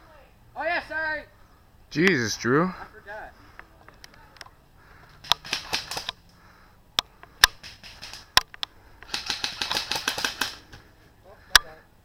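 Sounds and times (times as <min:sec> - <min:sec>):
airsoft guns firing: 0:05.2 - 0:06.2, 0:07.3 - 0:10.8.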